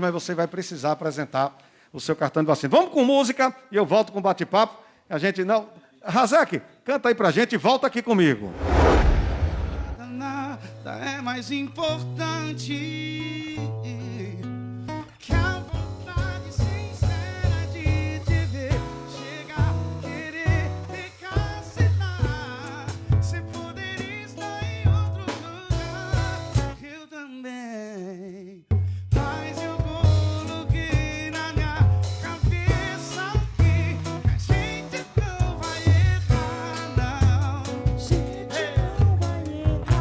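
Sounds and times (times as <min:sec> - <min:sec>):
man singing pop song: 0:10.0 - 0:14.5, 0:15.3 - 0:40.0
drum kit beat: 0:29.2 - 0:40.0.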